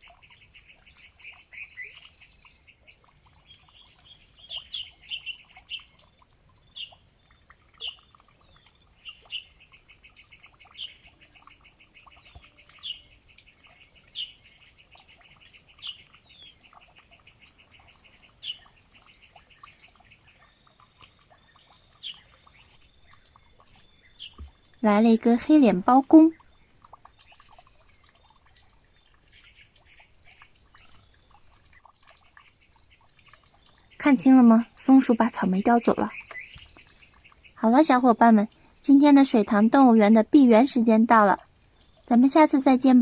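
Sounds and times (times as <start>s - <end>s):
birds chirping: 0.0s - 43.0s.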